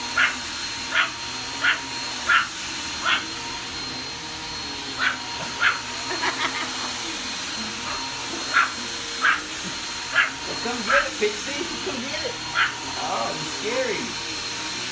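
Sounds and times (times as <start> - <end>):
vacuum cleaner whining: 0.0 - 14.9
dog yipping: 0.1 - 3.4, 4.9 - 6.9, 7.7 - 11.1, 12.5 - 12.9
dog barking: 0.2 - 3.3, 5.0 - 5.9, 7.8 - 9.5, 10.1 - 11.0, 12.5 - 12.8.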